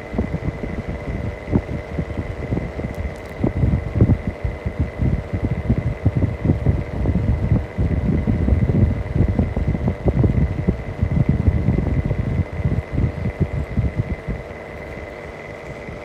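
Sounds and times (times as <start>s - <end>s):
fan bearing knocking and rattling: 0.0s - 16.0s
fan whine: 0.0s - 16.0s.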